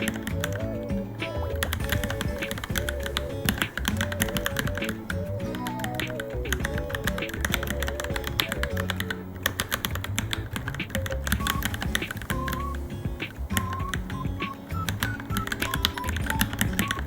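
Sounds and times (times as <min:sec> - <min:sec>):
background music: 0:00.0 - 0:17.0.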